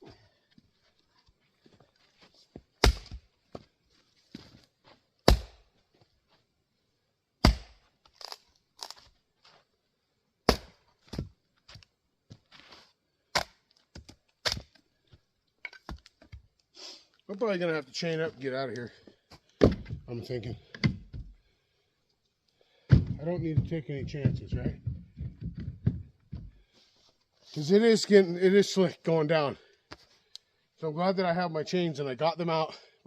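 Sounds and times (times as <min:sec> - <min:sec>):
wooden knocks of firewood: 0:10.5 - 0:11.8, 0:19.5 - 0:20.1, 0:20.7 - 0:21.4, 0:22.9 - 0:26.6
firewood clattering: 0:12.6 - 0:16.6, 0:19.0 - 0:21.4, 0:22.8 - 0:26.8.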